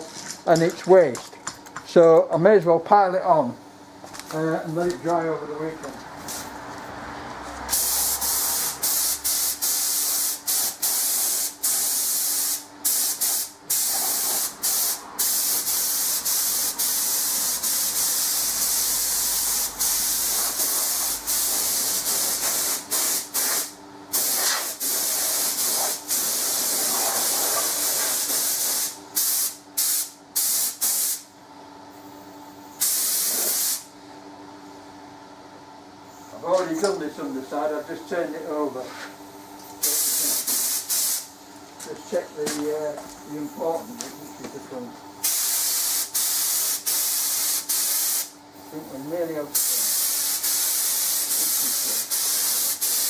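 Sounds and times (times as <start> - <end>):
paint spray gun hissing: 7.7 - 31.2, 32.8 - 33.9, 39.8 - 41.3, 45.2 - 48.4, 49.5 - 53.0.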